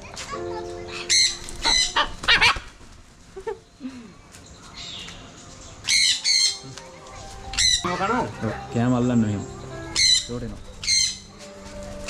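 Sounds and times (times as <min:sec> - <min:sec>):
parrots squawking: 0:00.9 - 0:02.7, 0:05.9 - 0:06.6, 0:07.4 - 0:08.7, 0:09.6 - 0:11.3.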